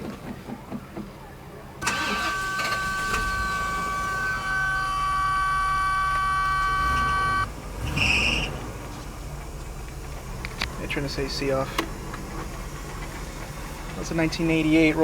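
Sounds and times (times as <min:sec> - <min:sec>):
car engine running: 0:00.8 - 0:15.0
electronic warning buzzer: 0:01.8 - 0:07.5.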